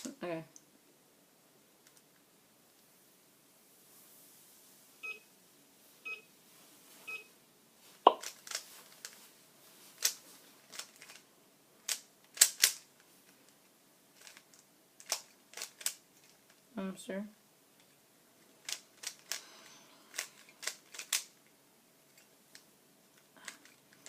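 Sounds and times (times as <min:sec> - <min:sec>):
short electronic beeps: 0:07.1 - 0:07.3
plastic puzzle cube clacking: 0:08.2 - 0:09.2, 0:10.0 - 0:11.2, 0:11.8 - 0:13.5, 0:14.2 - 0:16.6, 0:18.6 - 0:19.4, 0:20.1 - 0:21.4.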